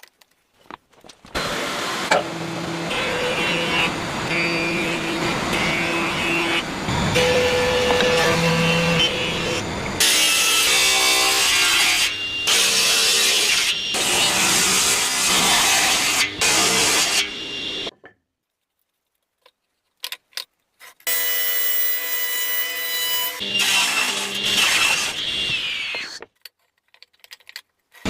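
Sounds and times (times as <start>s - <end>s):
saw cutting wood: 1.3s - 17.9s, 21.1s - 26.2s.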